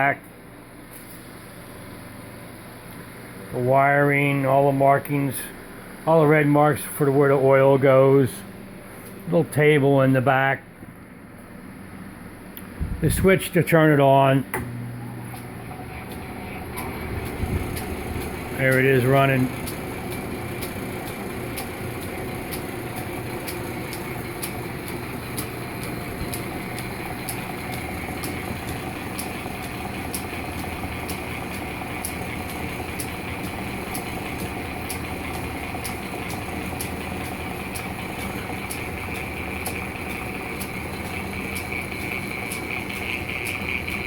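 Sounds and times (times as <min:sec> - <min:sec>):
drill press motor humming: 0:14.4 - 0:44.0
light ticking of drive belt: 0:16.0 - 0:44.0.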